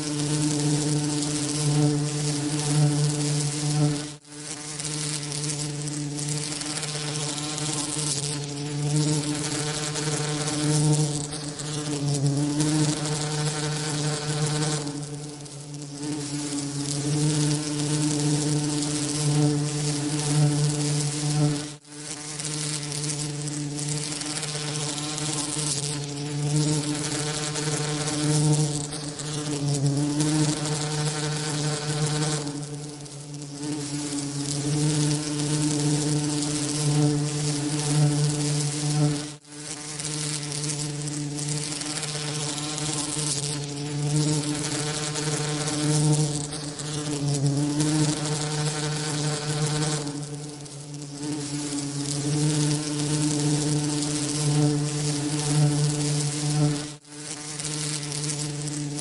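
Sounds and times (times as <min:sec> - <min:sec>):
bee wings buzzing: 0:00.0 - 0:59.0.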